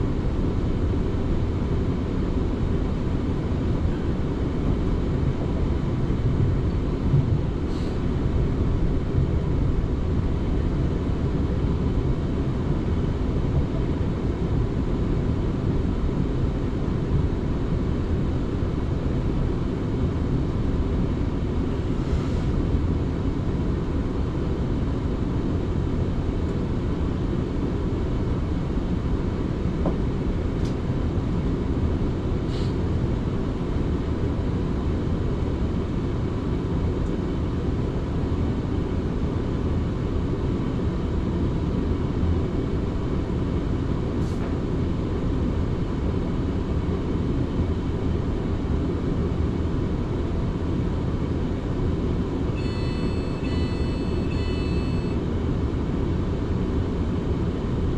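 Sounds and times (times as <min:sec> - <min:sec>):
train wheels rumbling on track: 0:00.0 - 0:19.6, 0:20.4 - 0:24.6.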